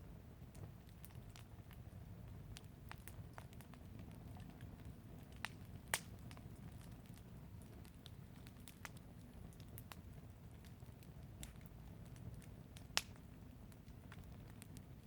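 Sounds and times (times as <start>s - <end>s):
fire crackling and popping: 0.0s - 15.0s.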